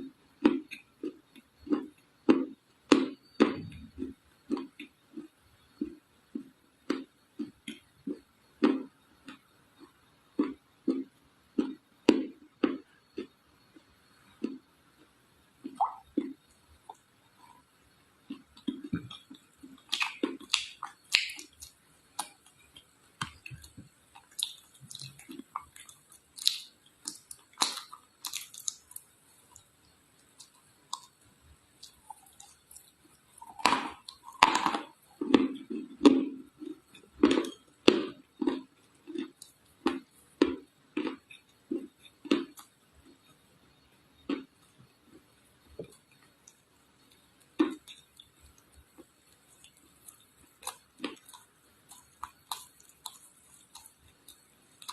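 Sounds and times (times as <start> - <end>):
chewing: 18.3 - 31.2, 31.8 - 43.4, 45.1 - 54.9.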